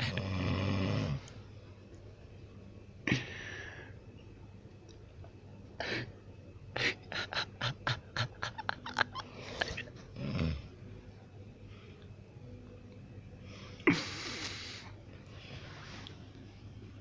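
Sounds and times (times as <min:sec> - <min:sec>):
person snorting: 0:13.8 - 0:14.8.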